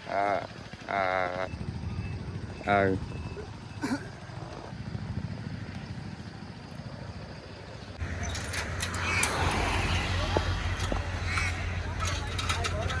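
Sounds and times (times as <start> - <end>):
vehicle engine rumbling: 0.0 - 13.0
clicks and knocks: 8.0 - 13.0.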